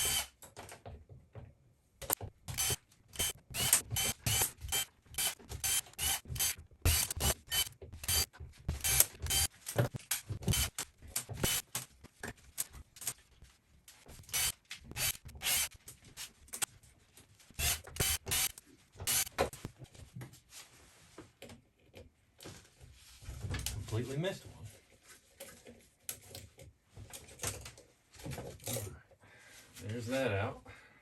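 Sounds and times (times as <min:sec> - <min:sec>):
hand ratchet clicking: 0:02.5 - 0:09.5, 0:10.1 - 0:10.8, 0:11.4 - 0:11.7, 0:14.2 - 0:15.8, 0:17.6 - 0:19.5.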